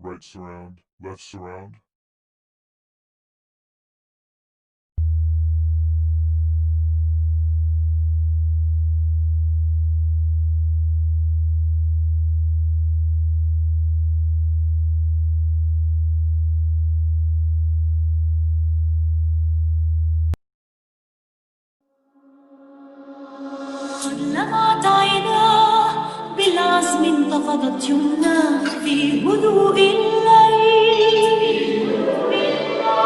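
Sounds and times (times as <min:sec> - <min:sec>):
deep sine test tone: 0:05.0 - 0:20.4.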